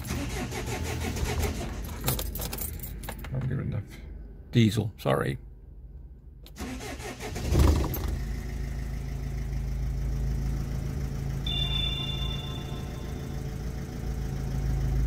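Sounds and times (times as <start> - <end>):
diesel engine cranking and idling: 0.0 - 4.5, 5.6 - 15.0
short high electronic beep: 11.5 - 13.6.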